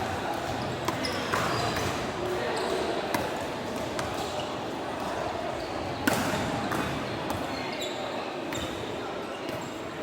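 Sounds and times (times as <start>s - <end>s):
murmur of players and onlookers: 0.0s - 10.0s
shoes squeaking on court floor: 0.5s - 3.0s, 5.5s - 9.9s.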